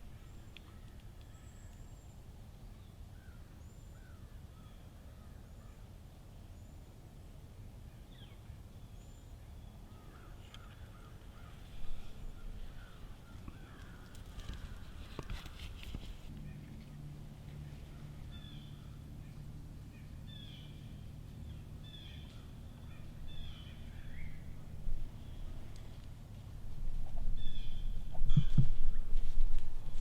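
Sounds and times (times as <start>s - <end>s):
low steady rumble: 0.0s - 30.0s
birds chirping: 8.0s - 15.4s, 16.3s - 26.0s, 26.9s - 29.1s
soft clicks and rustles: 13.3s - 17.6s.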